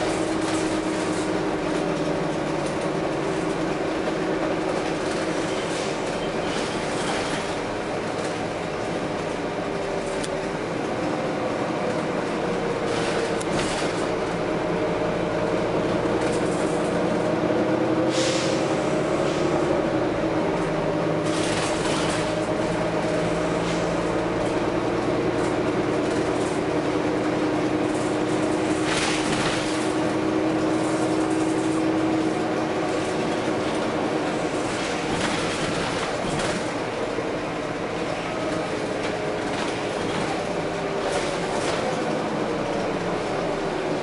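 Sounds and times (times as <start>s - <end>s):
bus engine and drivetrain whine: 0.0s - 44.0s
air brake hisses: 18.0s - 19.5s.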